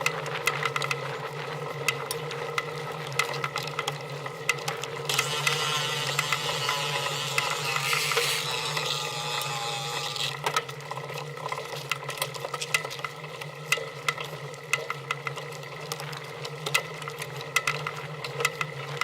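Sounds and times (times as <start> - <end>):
machine humming: 5.1 - 10.5.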